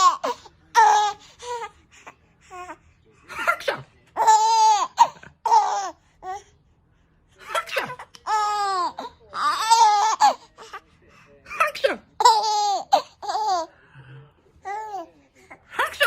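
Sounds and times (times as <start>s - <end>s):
baby laughing: 4.2s - 6.4s, 7.5s - 10.5s, 11.5s - 13.7s.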